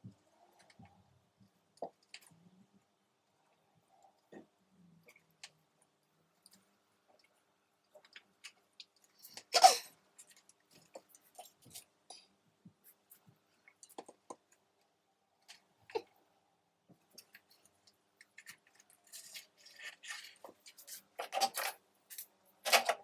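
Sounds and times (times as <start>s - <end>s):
soft clicks and taps: 10.3s - 16.0s.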